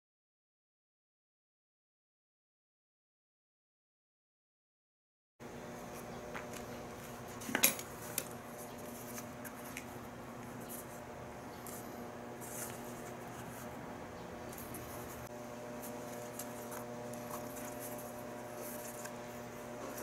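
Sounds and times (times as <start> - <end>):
steady low hum: 5.4 - 20.0
small tools clinking: 7.4 - 7.9.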